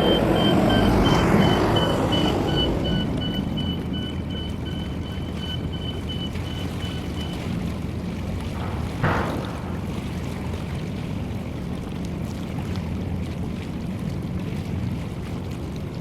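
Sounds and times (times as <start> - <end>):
pulsed electronic beeping: 0.0 - 7.5
boat engine rumbling: 0.0 - 16.0.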